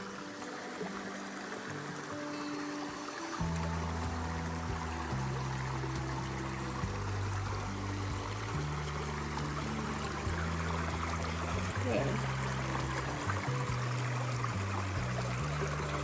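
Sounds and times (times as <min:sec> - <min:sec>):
background music with low notes: 0:00.0 - 0:16.0
stream rushing: 0:00.0 - 0:16.0.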